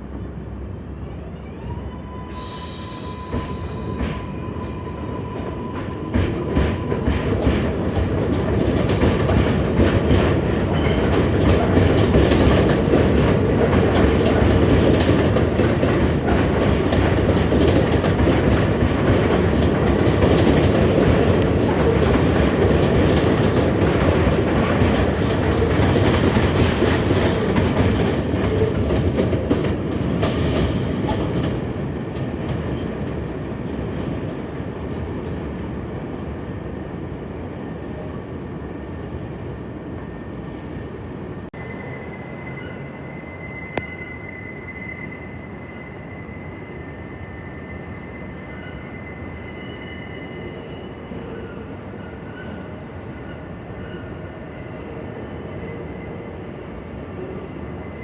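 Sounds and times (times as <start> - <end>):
subway train wheels clattering on rails: 2.3 - 37.0.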